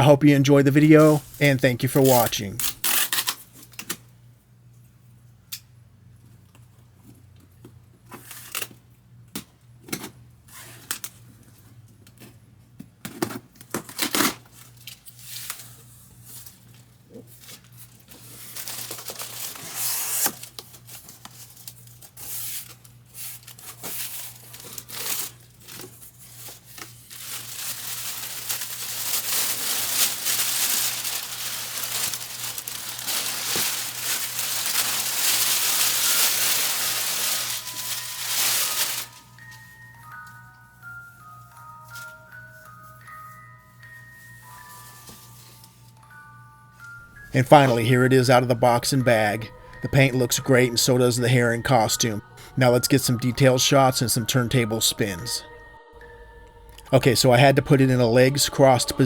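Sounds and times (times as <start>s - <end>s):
plastic wrapping crinkling: 0.8s - 3.8s, 13.9s - 49.9s.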